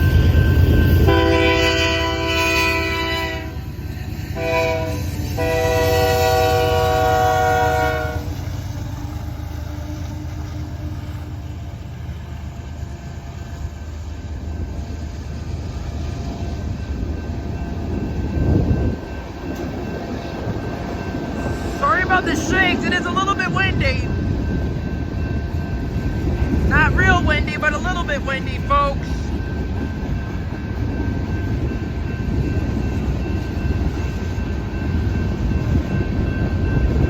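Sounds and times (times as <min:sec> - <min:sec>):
freight train rumbling: 0:00.0 - 0:37.0
locomotive air horn blasts: 0:01.0 - 0:03.7, 0:04.3 - 0:08.4.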